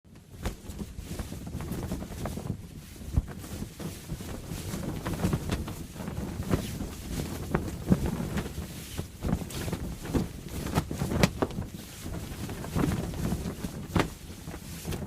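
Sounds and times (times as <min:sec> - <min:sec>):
canvas sail flapping and snapping: 0:00.1 - 0:15.0
low wind rumble: 0:00.2 - 0:15.0.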